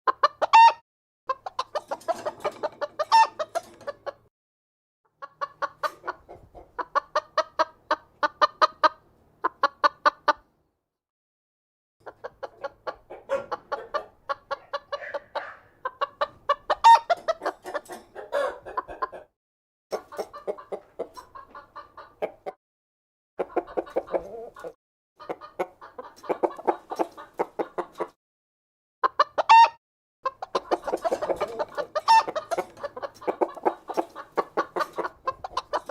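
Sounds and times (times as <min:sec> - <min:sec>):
hen clucking: 0:00.1 - 0:04.3, 0:05.1 - 0:10.5, 0:12.0 - 0:19.3, 0:19.9 - 0:22.6, 0:23.4 - 0:28.2, 0:29.0 - 0:35.9.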